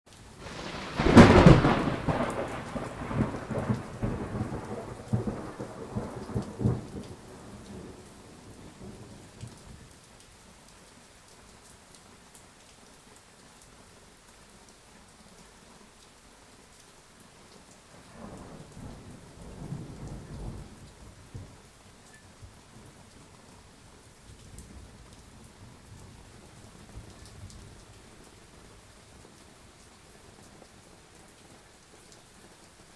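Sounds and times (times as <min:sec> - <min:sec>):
steady rain: 0:00.1 - 0:32.9
thunder rumbling: 0:00.4 - 0:09.2, 0:18.1 - 0:21.6.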